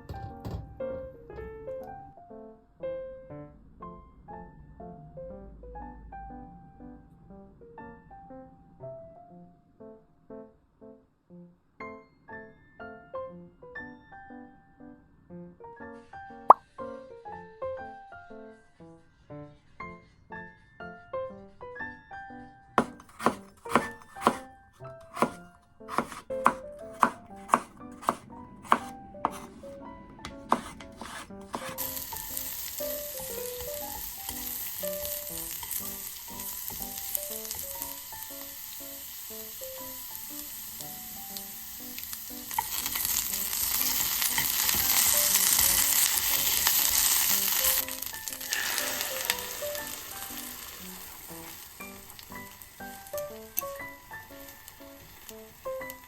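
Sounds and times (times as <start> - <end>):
soft background music: 0.0 - 56.0
food sizzling in a frying pan: 31.6 - 56.0.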